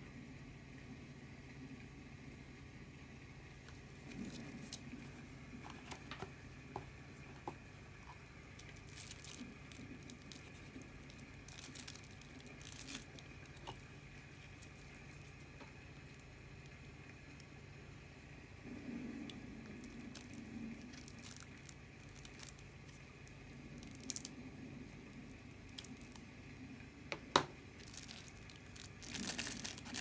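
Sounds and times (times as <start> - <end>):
steady low hum: 0.0 - 30.0
packaging rustling and tearing: 3.6 - 6.3, 7.4 - 16.2, 19.6 - 23.0, 23.8 - 24.3, 27.8 - 30.0.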